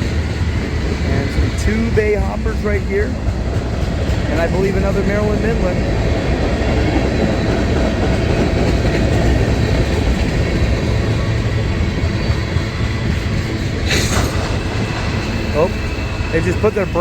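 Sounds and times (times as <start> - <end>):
train wheels rumbling on rail: 0.0 - 17.0
air brakes hissing: 13.6 - 16.6.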